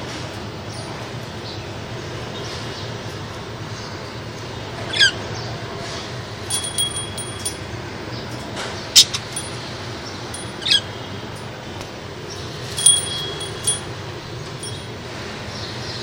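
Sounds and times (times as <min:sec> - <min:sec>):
birds chirping shrilly: 0:08.9 - 0:11.0.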